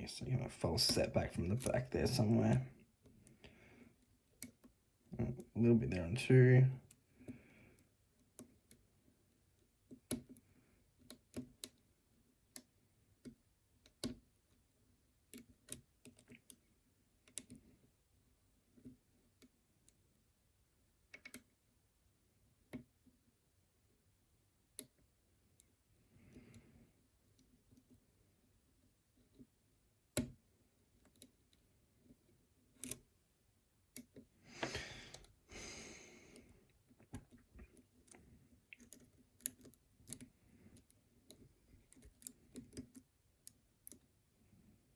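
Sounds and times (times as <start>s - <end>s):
lock pick clicks: 32.8s - 33.0s.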